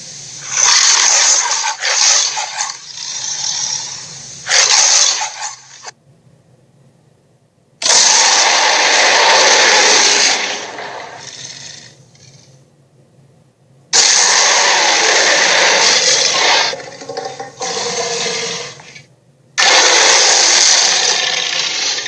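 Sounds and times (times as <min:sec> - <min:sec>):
dinosaur roars: 0:07.8 - 0:12.0, 0:14.0 - 0:18.9, 0:19.6 - 0:22.0.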